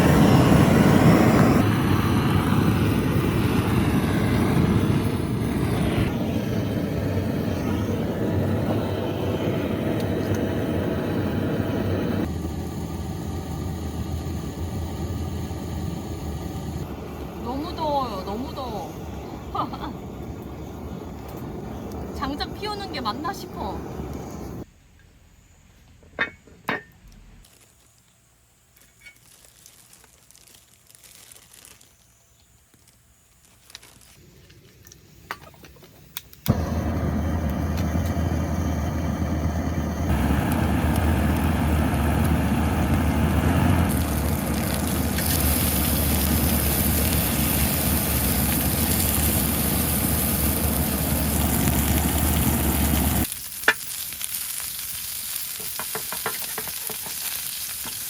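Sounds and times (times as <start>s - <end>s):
meat sizzling on hot metal: 0.0s - 23.4s, 39.9s - 58.0s.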